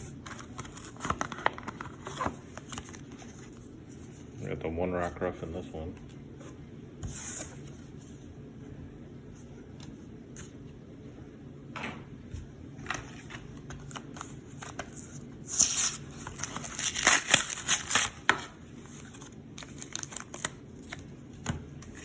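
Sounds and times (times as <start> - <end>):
cards rustling and clicking: 0.1 - 4.4, 12.8 - 22.0
foil wrapper crinkling and tearing: 13.8 - 21.0.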